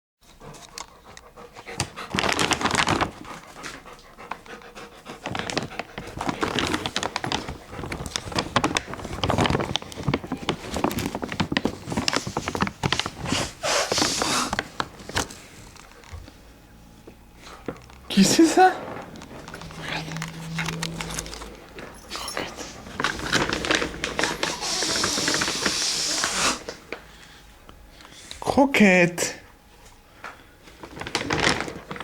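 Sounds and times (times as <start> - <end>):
dog panting: 0.3 - 14.9, 18.8 - 26.8.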